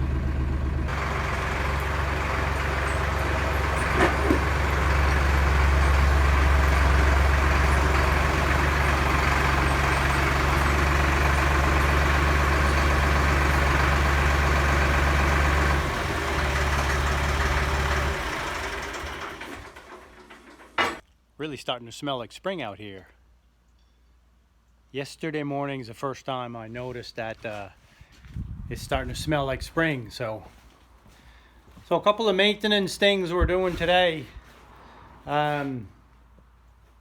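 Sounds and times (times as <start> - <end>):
tractor engine running: 0.0 - 21.0, 31.7 - 35.6.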